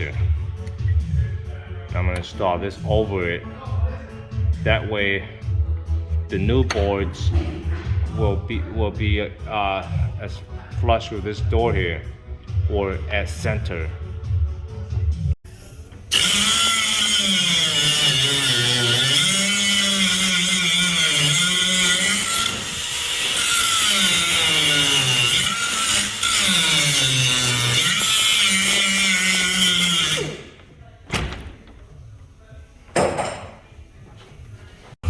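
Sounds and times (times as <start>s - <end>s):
electric power tool grinding metal: 15.5s - 30.7s.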